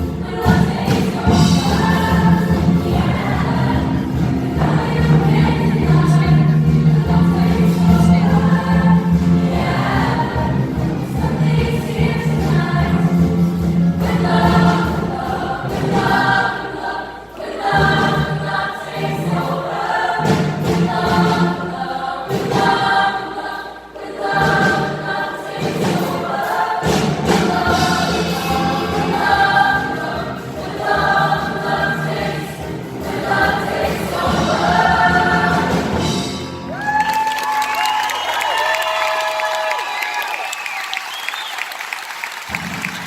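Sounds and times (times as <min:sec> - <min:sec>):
choir singing: 0:00.0 - 0:36.9.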